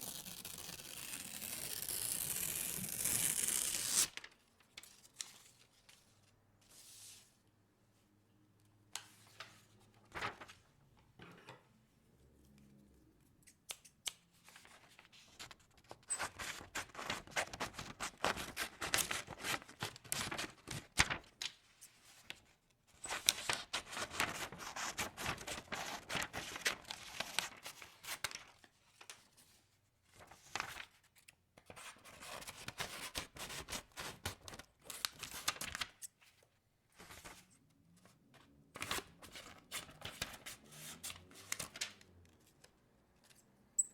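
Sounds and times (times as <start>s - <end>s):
paper tearing and crackling: 0.0s - 4.2s, 24.1s - 27.0s.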